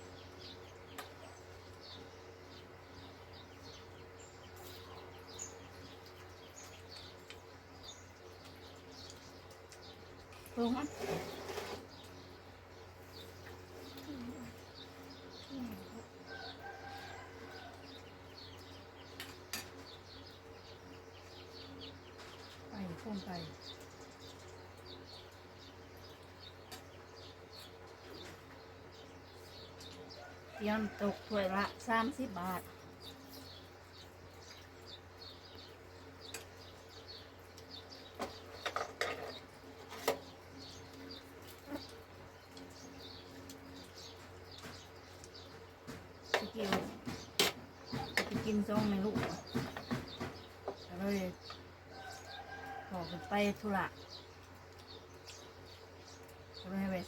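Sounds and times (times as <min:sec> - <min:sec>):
small birds chirping: 0:00.0 - 0:57.0.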